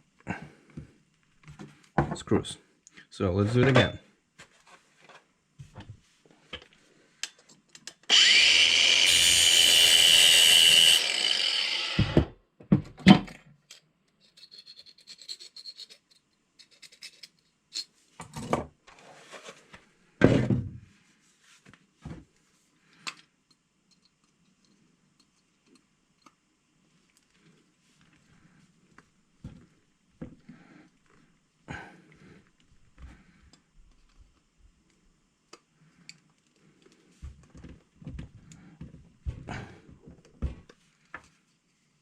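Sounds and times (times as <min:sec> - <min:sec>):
angle grinder grinding metal: 0:08.1 - 0:12.3.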